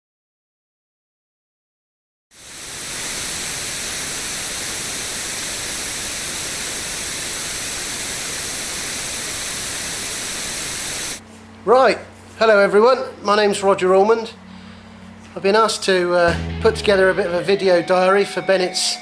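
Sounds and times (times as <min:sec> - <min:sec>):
static hiss: 0:02.4 - 0:11.2.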